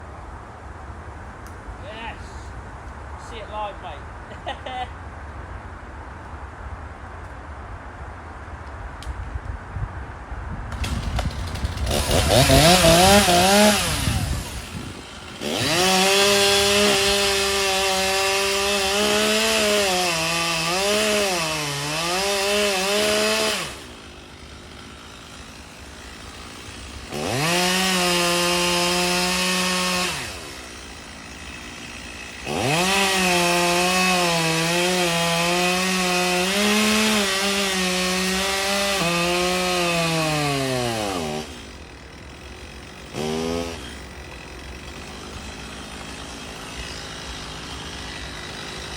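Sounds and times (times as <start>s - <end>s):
chainsaw revving and idling: 10.8s - 48.9s.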